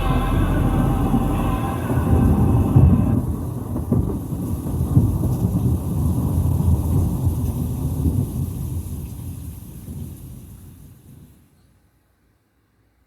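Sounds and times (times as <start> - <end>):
music with heavy bass on speaker: 0.0 - 3.2.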